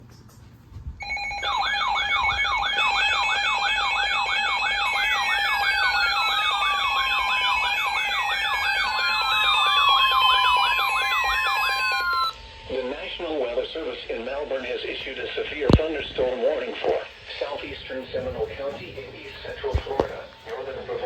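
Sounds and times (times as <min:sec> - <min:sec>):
fast up-and-down warble: 0:01.0 - 0:12.4
falling whistle glides: 0:01.0 - 0:12.5
steady alarm tone: 0:01.0 - 0:21.0.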